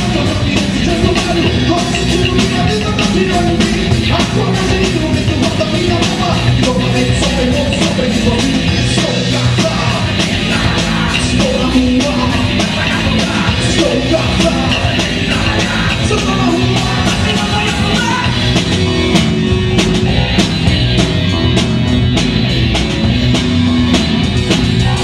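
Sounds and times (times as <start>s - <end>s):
person singing: 0.0s - 18.5s
bass guitar: 0.0s - 25.0s
drum kit with cymbal hits: 0.0s - 25.0s
electric guitar: 0.0s - 25.0s.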